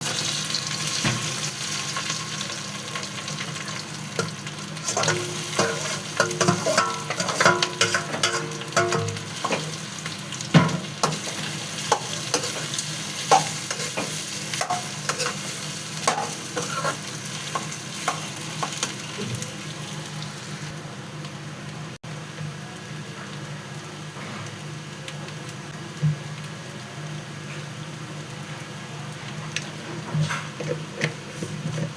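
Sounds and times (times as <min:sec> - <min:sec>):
food sizzling in hot oil: 0:00.0 - 0:31.9
spoon scraping and knocking pan: 0:04.9 - 0:09.8, 0:11.9 - 0:15.4, 0:16.0 - 0:18.9.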